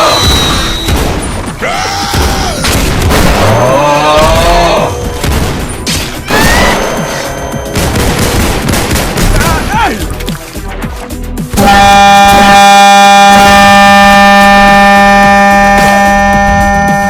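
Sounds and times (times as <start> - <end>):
music: 0.0 - 13.6, 14.4 - 17.0
gunfire and impacts: 0.2 - 9.7.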